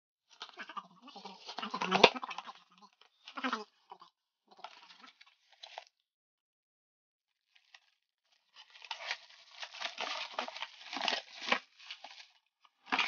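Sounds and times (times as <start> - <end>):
packaging tearing and crinkling: 8.5 - 13.0.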